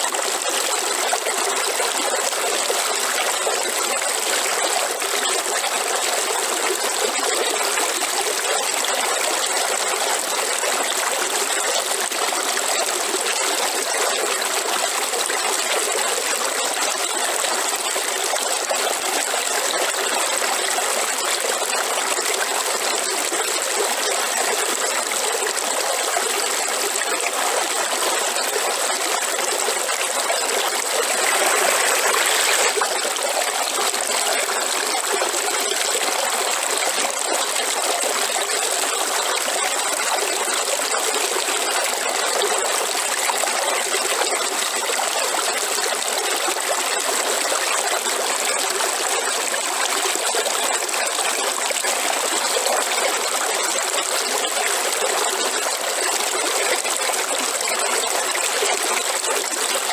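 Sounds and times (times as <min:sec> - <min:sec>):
river water rushing: 0:30.2 - 0:33.6.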